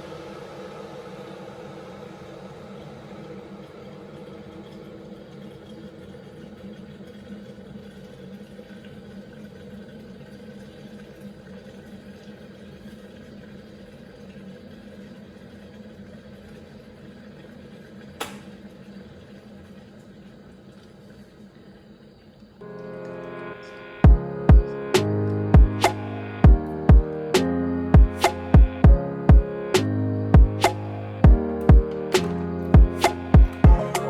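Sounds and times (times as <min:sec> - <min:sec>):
electric kettle boiling: 0:00.0 - 0:22.6
kettle switch click: 0:18.2 - 0:18.6.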